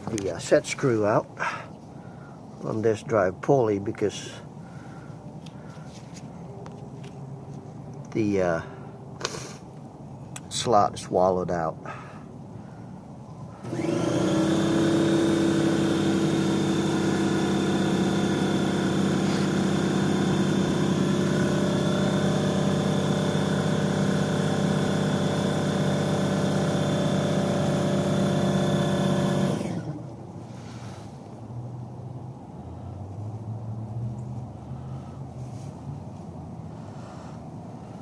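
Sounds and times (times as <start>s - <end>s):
drill press motor whining: 13.6s - 30.0s.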